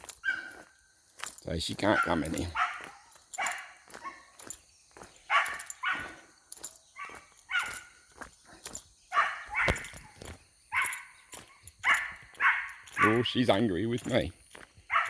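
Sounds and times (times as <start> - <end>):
dog barking high-pitched: 0.2 - 0.6, 1.9 - 4.4, 5.3 - 6.2, 7.0 - 8.0, 9.1 - 13.4.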